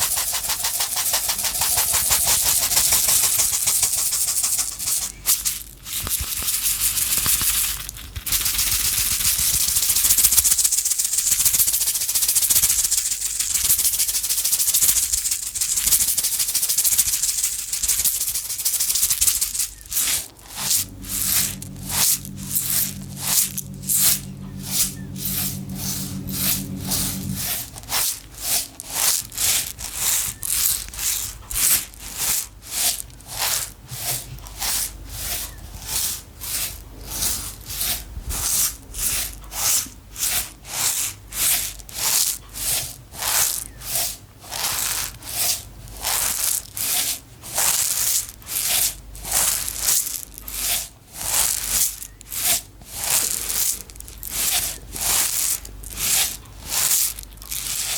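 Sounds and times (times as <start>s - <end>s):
dry pieces rattling in container: 0.0s - 33.8s, 44.5s - 57.9s.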